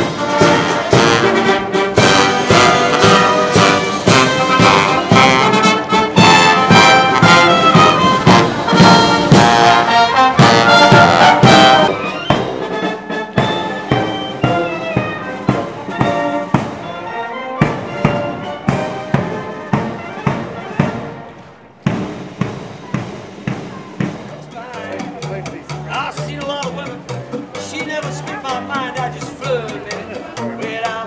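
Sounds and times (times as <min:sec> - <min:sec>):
brass band playing: 0:00.0 - 0:31.0
drum beats: 0:00.0 - 0:31.0.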